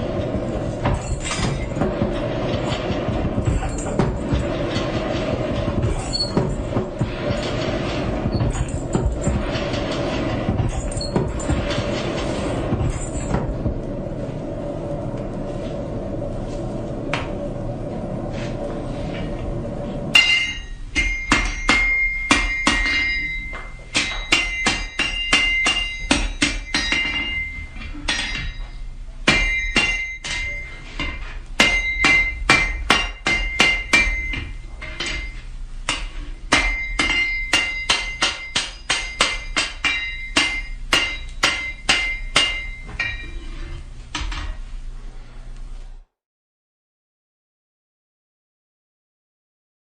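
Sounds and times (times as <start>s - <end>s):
hammer striking metal on anvil: 20.1s - 43.4s.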